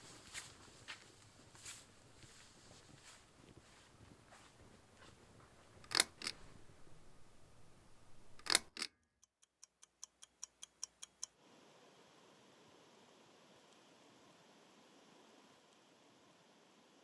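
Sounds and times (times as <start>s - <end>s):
sharp clicks: 5.8s - 6.4s, 8.4s - 11.4s
light even ticks: 8.4s - 11.4s.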